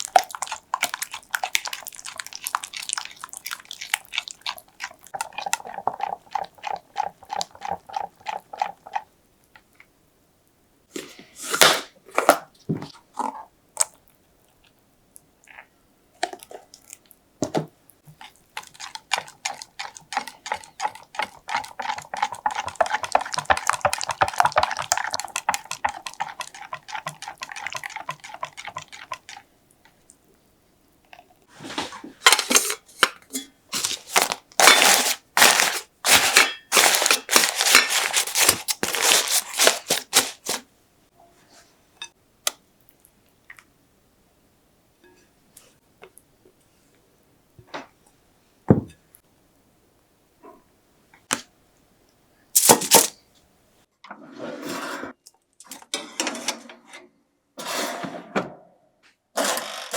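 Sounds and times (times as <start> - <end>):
utensil beating batter in bowl: 0.0 - 9.1, 17.4 - 30.0, 33.8 - 40.6.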